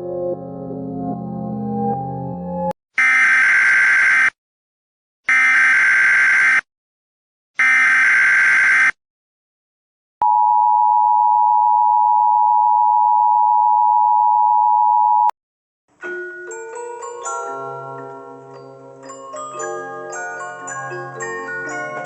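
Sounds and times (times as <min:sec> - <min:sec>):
chiming glockenspiel-like tune: 0:16.0 - 0:22.0.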